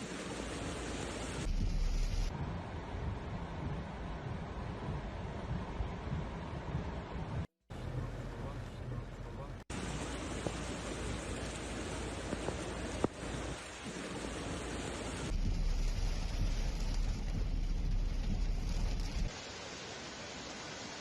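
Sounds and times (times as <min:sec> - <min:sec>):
heavy rain hiss: 0:00.0 - 0:02.3, 0:09.7 - 0:21.0
deep rumble: 0:01.2 - 0:19.3.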